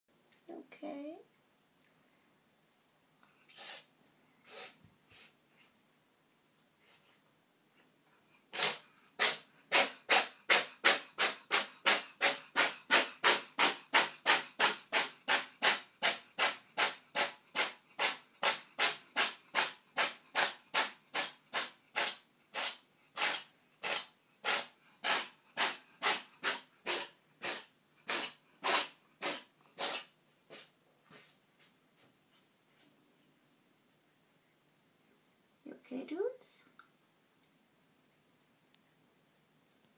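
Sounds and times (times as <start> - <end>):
cat sneezing: 3.5 - 5.3, 8.5 - 31.2.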